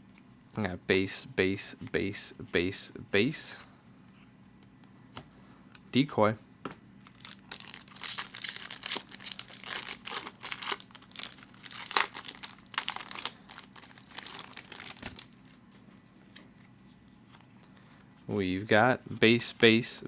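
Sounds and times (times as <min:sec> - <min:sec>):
wrapper tearing and crinkling: 0:07.0 - 0:15.4.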